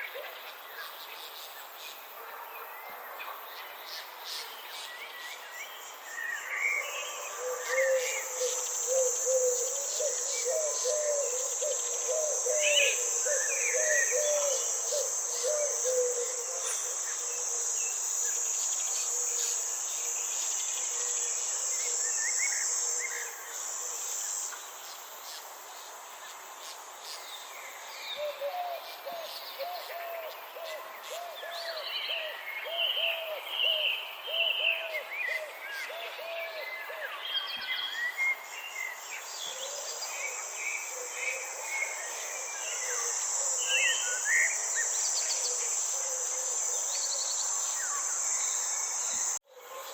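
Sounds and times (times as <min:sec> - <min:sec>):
high insect buzz: 0:04.3 - 0:28.2, 0:37.4 - 0:49.4.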